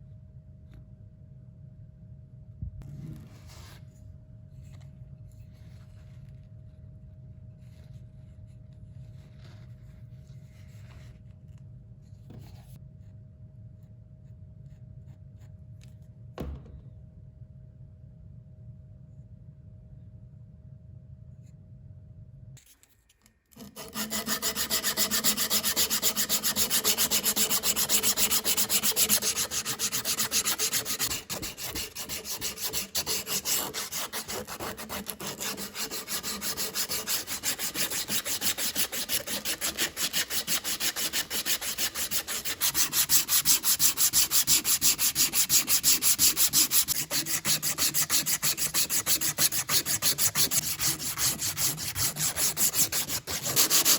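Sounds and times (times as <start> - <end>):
rhythmic rubbing against wood: 23.7 - 53.9.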